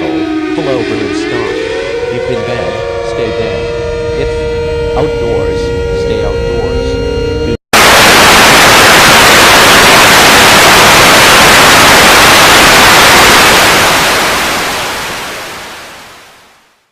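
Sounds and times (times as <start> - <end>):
static hiss: 7.8 - 16.9.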